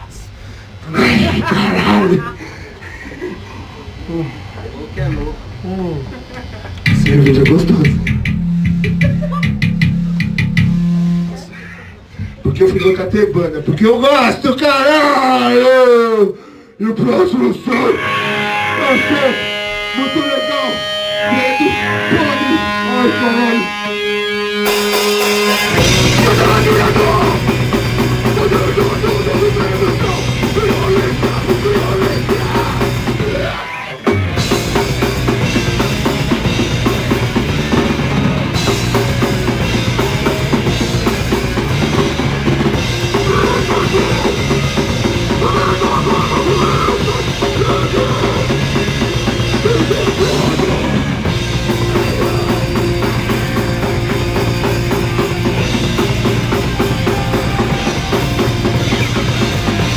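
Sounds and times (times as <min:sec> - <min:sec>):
rock band playing live: 0:06.9 - 0:11.4, 0:17.9 - 0:59.9.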